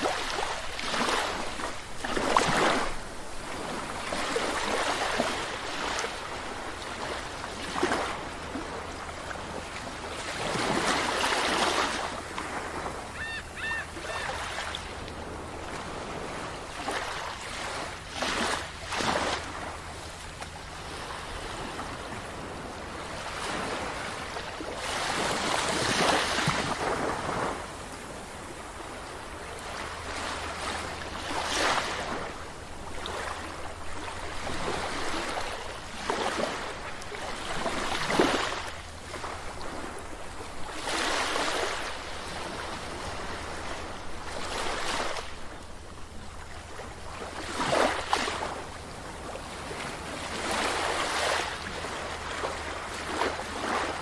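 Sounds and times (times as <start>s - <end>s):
sea waves breaking on beach: 0.0s - 54.0s
gull calling: 13.0s - 14.7s.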